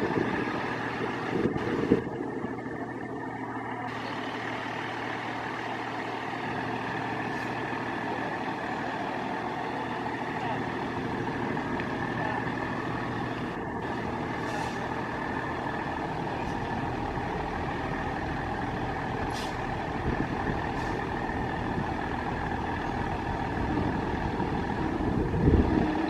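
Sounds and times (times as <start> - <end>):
diesel engine running: 0.0 - 26.0
short air hisses: 19.3 - 19.6.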